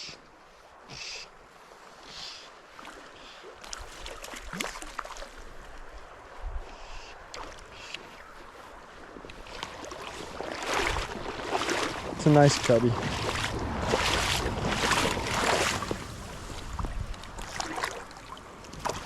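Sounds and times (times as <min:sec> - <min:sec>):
stream running: 0:00.0 - 0:19.0
sharp clicks and splashes: 0:03.6 - 0:05.4, 0:07.3 - 0:08.2, 0:09.1 - 0:19.0
wind buffeting microphone: 0:09.4 - 0:19.0.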